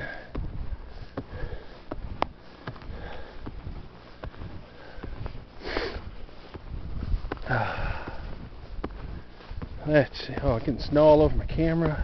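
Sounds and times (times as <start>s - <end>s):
person breathing hard: 0.0s - 6.2s, 7.4s - 9.6s
snowshoes crunching snow: 0.0s - 12.0s.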